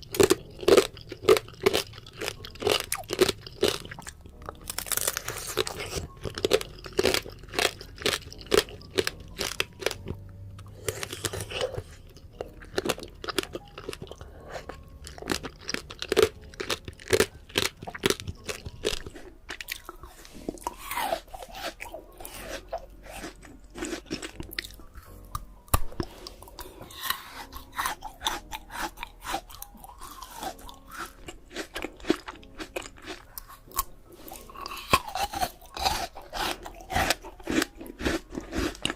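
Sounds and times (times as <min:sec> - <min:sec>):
crisp fruit crunching: 0:00.0 - 0:38.9
wet chewing: 0:00.0 - 0:38.9.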